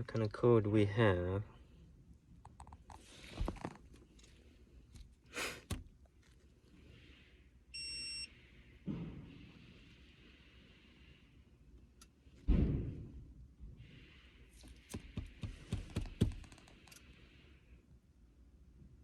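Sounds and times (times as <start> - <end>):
handling rustles and knocks: 2.6 - 6.5, 14.6 - 16.9
dull thud: 12.5 - 13.2.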